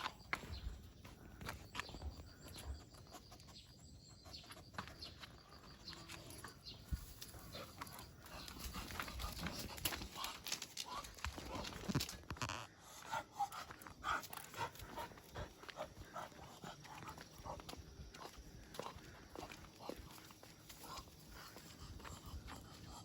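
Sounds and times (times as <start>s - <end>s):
footsteps and scuffs: 0.0s - 23.0s
dog breathing hard: 18.6s - 23.0s.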